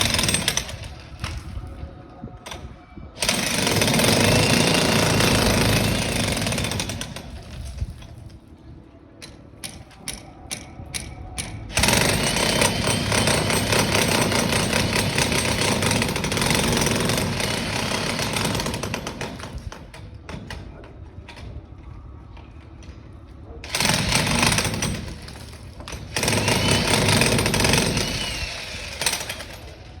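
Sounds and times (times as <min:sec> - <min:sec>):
loud power tool running: 0:26.1 - 0:29.7.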